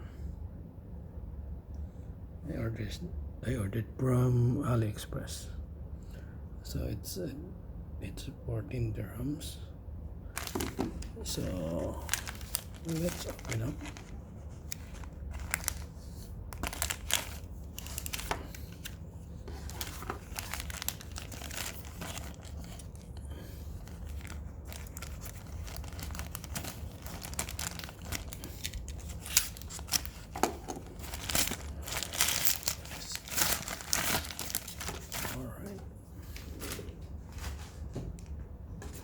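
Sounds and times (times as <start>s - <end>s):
steady low hum: 0.0s - 39.0s
packaging rustling and tearing: 10.4s - 35.4s.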